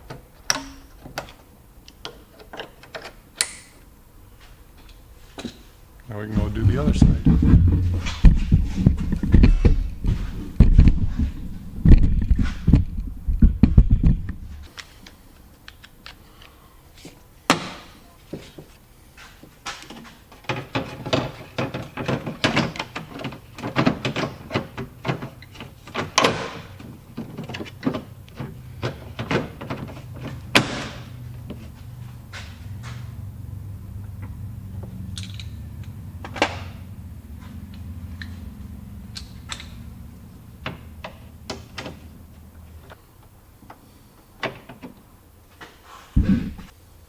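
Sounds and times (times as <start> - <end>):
irregular clicks and knocks: 0.0 - 3.8, 19.7 - 31.6, 37.4 - 43.8
heavy thumps: 6.2 - 14.7, 46.2 - 46.7.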